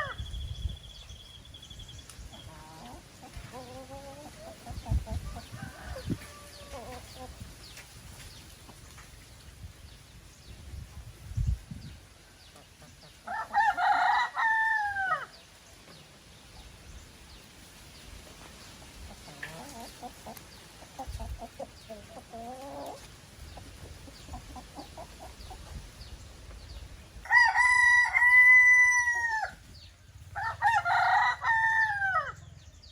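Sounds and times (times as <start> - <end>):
roosters crowing: 0.0 - 0.2, 5.1 - 7.2, 13.2 - 15.4, 27.2 - 32.6.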